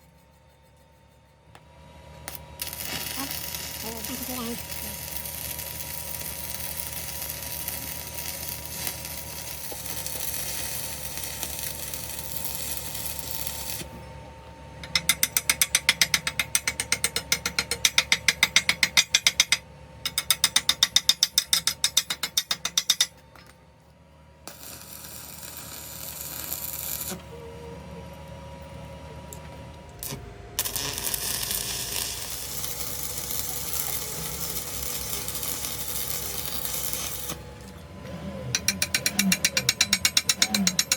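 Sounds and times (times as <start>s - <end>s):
rapid mechanical clicking: 38.5s - 40.9s.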